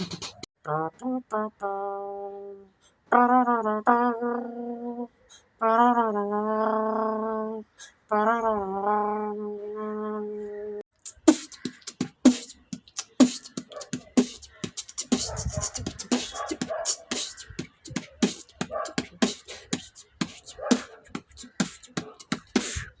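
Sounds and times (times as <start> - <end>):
person beatboxing: 0.0 - 0.5, 11.0 - 23.0.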